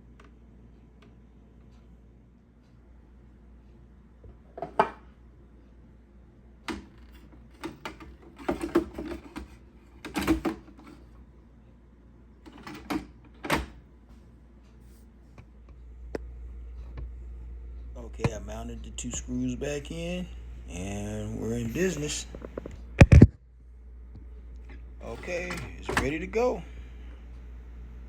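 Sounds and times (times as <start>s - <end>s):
plastic parts knocking and clicking: 6.7s - 11.0s.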